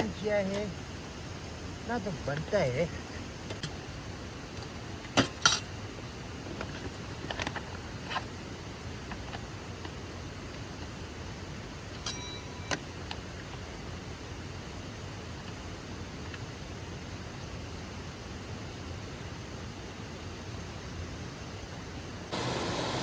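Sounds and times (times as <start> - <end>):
small stream rushing: 22.3 - 23.0.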